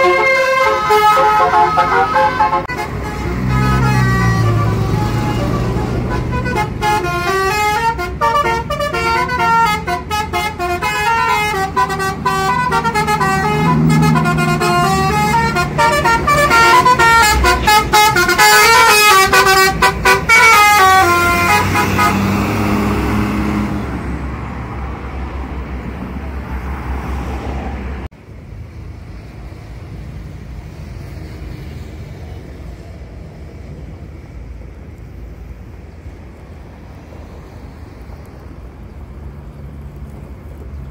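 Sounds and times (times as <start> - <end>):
bus horn trumpets playing melody: 0.0 - 23.9
bus engine running: 0.0 - 26.6.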